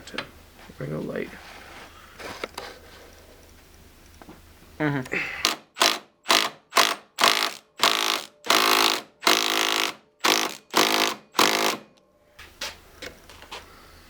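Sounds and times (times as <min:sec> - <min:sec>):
power wrench bursts: 0:05.4 - 0:11.9.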